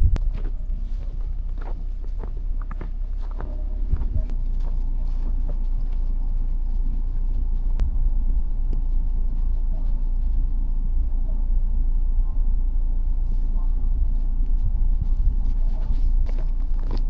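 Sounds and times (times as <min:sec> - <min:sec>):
wind buffeting microphone: 0:00.0 - 0:04.8, 0:11.0 - 0:17.0.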